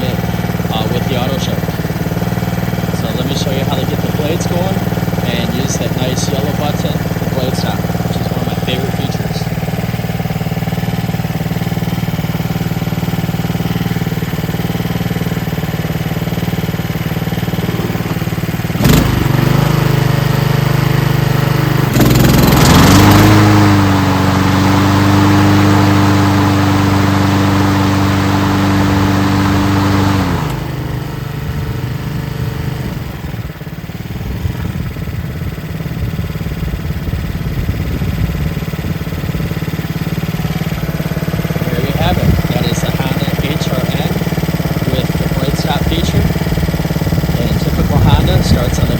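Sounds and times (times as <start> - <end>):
lawn mower engine running: 0.0 - 48.9
spinning mower blade: 0.0 - 48.9
blade clutch clunk: 2.7 - 23.3.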